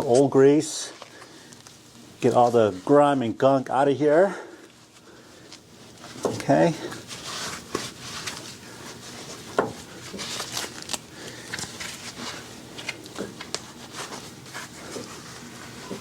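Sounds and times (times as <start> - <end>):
rustling: 4.6 - 16.0.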